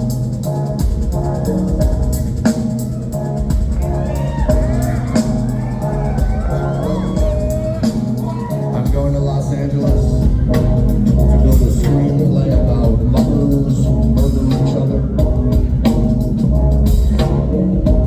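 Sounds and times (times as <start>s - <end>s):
heavy bass line: 0.0s - 18.0s
live band playing: 0.0s - 18.0s
drum hits: 0.8s - 13.6s.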